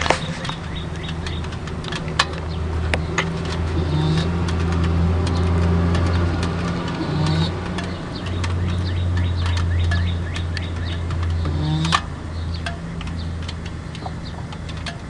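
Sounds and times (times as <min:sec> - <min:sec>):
sharp clicks: 0:00.0 - 0:15.0.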